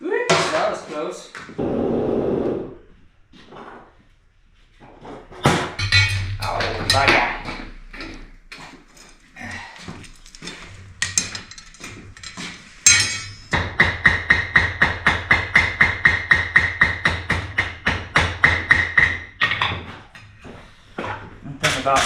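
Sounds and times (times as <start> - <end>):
hammer striking iron on anvil: 5.8 - 8.2, 11.0 - 19.3.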